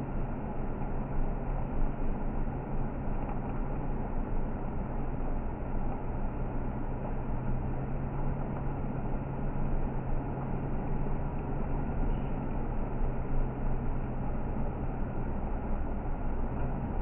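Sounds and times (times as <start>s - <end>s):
vehicle engine humming: 4.5s - 17.0s.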